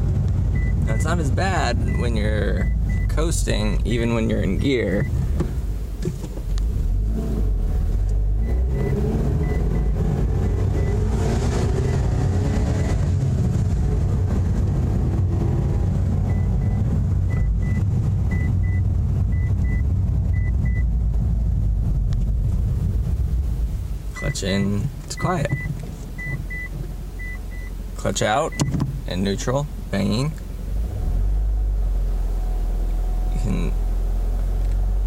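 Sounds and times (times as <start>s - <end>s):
car engine rumble from cabin: 0.0s - 35.0s
faint high beep: 24.2s - 24.4s.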